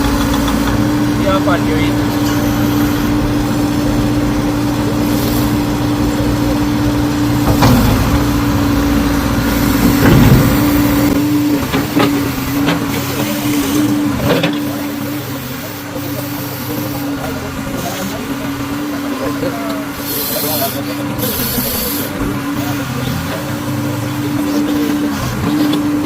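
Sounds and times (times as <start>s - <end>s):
machine engine humming: 0.0s - 26.0s
low rumble: 7.0s - 11.2s.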